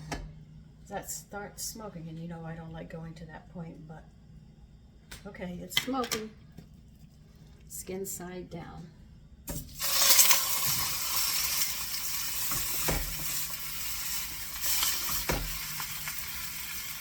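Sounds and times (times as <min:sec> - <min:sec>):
chicken sizzling in hot oil: 0:09.6 - 0:17.0.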